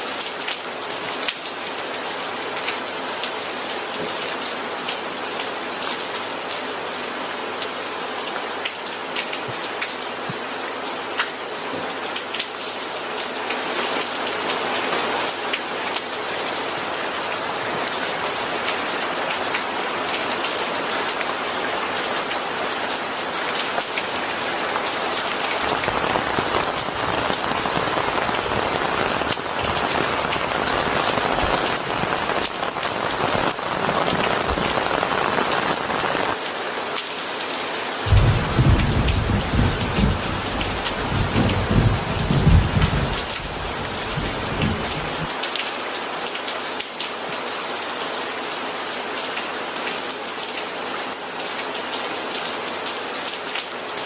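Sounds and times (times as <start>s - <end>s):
steady rain falling: 0.0s - 54.0s
thunder rumbling: 25.6s - 36.0s, 38.1s - 45.3s.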